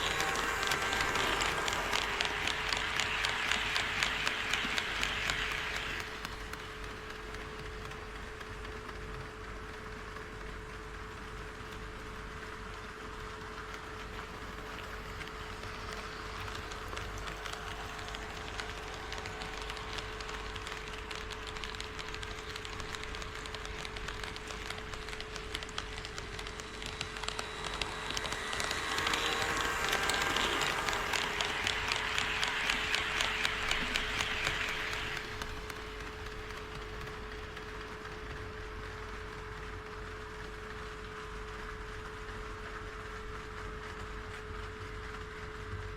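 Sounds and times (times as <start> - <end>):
model train motor hum: 0.0 - 8.0, 13.4 - 40.8
model train wheels clicking: 0.0 - 45.2.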